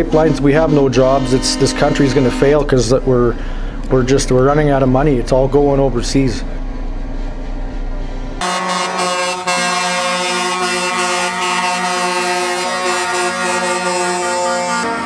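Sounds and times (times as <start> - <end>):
held chord with sliding note: 0.0 - 2.9, 8.4 - 15.0
low outdoor rumble: 0.0 - 8.4.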